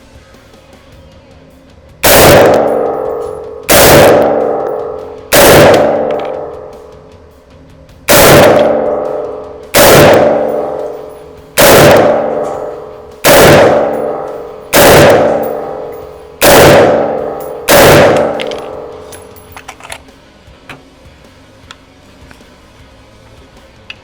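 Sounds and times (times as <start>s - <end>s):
rifle shots with ringing decay: 2.0s - 6.9s, 8.1s - 19.5s.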